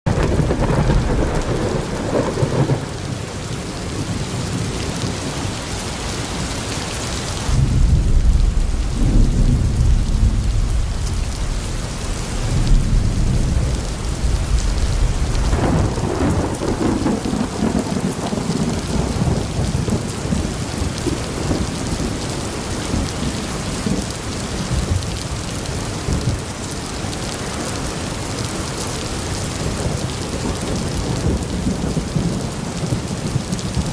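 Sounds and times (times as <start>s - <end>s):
heavy rain: 0.0s - 33.9s
deep rolling thunder: 0.1s - 3.3s, 7.5s - 26.5s, 29.5s - 33.9s.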